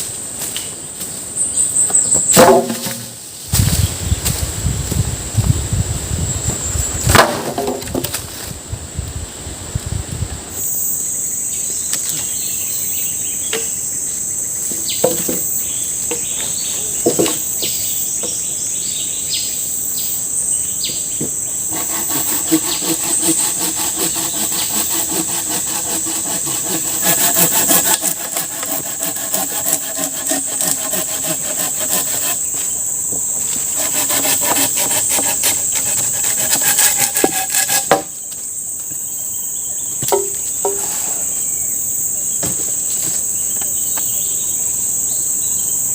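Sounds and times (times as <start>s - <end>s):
forest insects buzzing: 0.0s - 45.9s
knocks: 40.0s - 40.9s.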